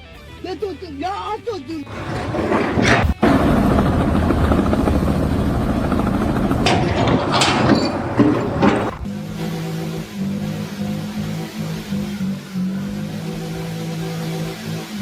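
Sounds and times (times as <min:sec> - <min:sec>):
low engine hum: 0:01.9 - 0:14.6
loud pulsing motor: 0:03.2 - 0:14.7.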